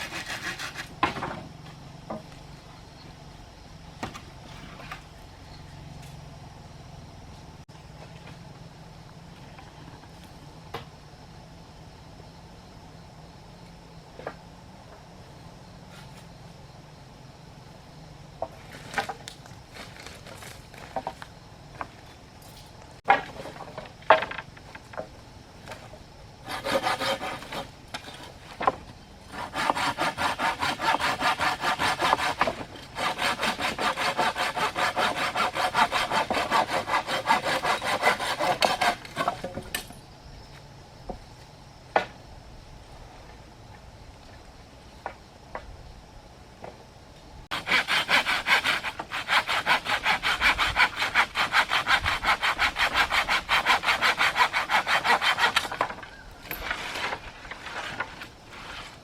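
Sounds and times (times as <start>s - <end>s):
hand saw cutting wood: 0.0s - 1.2s, 26.4s - 27.7s, 29.3s - 39.6s, 47.5s - 59.0s.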